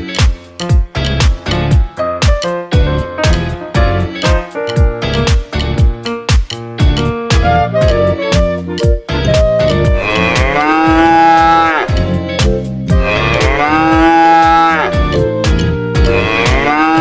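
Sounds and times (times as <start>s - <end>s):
background music with drumbeat: 0.0s - 16.8s
cow mooing: 10.0s - 12.0s, 13.0s - 15.1s, 16.0s - 17.0s.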